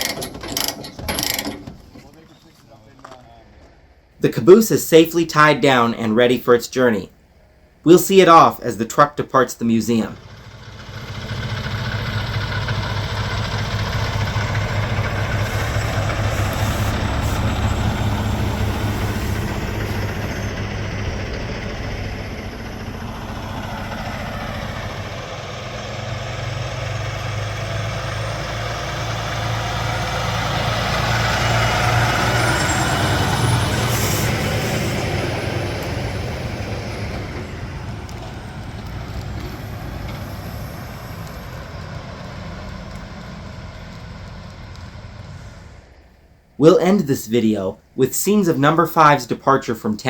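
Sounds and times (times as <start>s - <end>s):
diesel truck engine pulling away: 9.9s - 47.7s.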